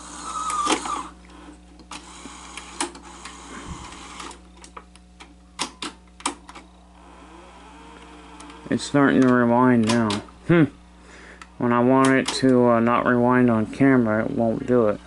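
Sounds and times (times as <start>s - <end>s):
faint rising whine of reels: 0.0s - 4.8s, 6.3s - 9.5s
mechanical whirr: 0.0s - 4.9s, 5.6s - 10.3s
steady low hum: 0.0s - 15.0s.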